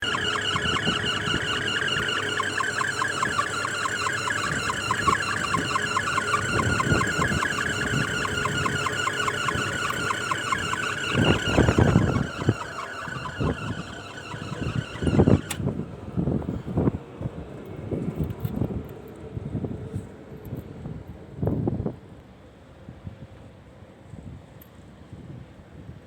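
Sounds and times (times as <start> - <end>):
blower belt chirping: 0.0 - 16.9.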